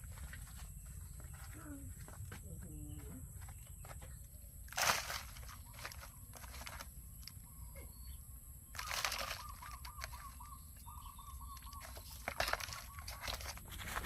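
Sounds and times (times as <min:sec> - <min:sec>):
scuffing rustling noise: 0:00.0 - 0:06.8
bird calling in warbling trills: 0:05.4 - 0:13.6.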